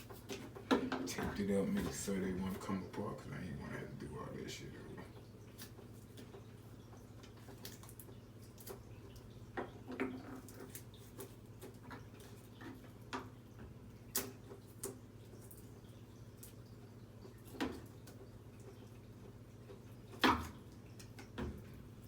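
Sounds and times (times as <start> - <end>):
steady low hum: 0.0 - 6.0.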